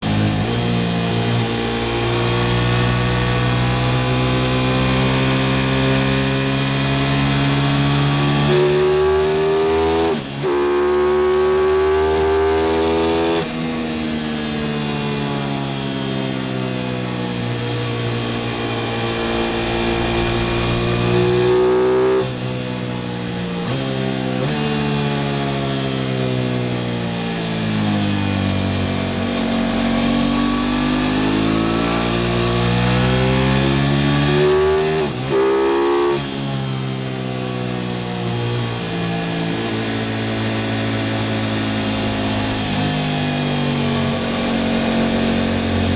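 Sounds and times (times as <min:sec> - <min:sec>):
motorcycle engine accelerating: 0:00.0 - 0:45.9
wind rush: 0:17.8 - 0:23.5.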